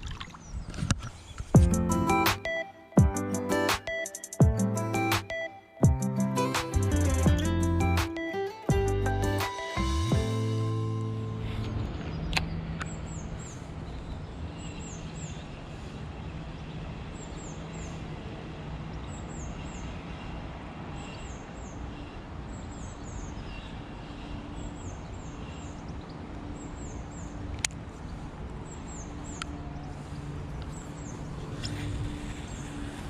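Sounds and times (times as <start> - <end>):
wind on microphone: 31.2 - 33.0.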